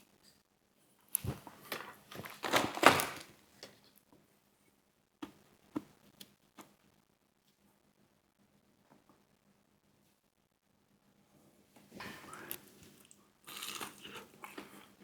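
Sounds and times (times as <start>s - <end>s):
crunching fried food: 12.5s - 14.9s.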